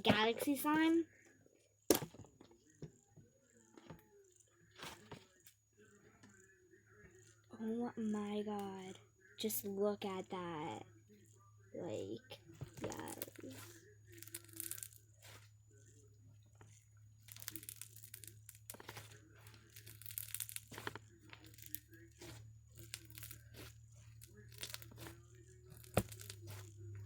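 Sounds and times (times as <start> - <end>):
slime crackling and popping: 14.2 - 15.4, 17.3 - 19.1, 19.7 - 25.1, 25.8 - 26.6.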